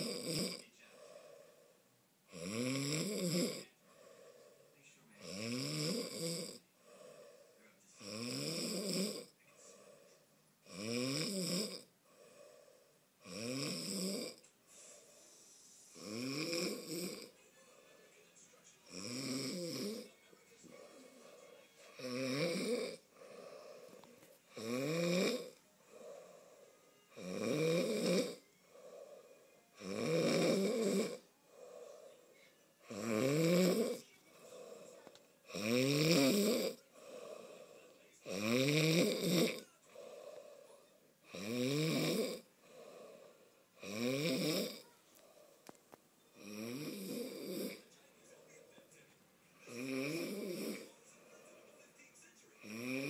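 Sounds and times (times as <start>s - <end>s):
man snoring loudly: 0.0s - 1.3s, 2.3s - 4.4s, 5.2s - 7.3s, 7.9s - 10.0s, 10.6s - 12.3s, 13.2s - 17.4s, 18.8s - 20.1s, 21.9s - 32.1s, 32.8s - 44.9s, 46.3s - 47.9s, 49.6s - 51.0s, 52.6s - 53.0s.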